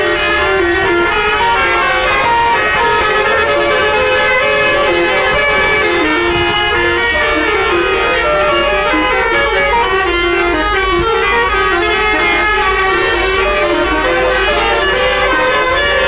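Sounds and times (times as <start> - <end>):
bus horn playing a melody: 0.0 - 16.0
steady low rumble: 0.4 - 8.1.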